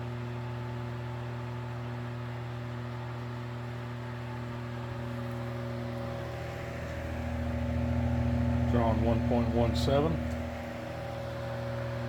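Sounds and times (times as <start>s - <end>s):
fan motor hum: 0.0s - 12.0s
air whirring through fan blades: 3.0s - 12.0s.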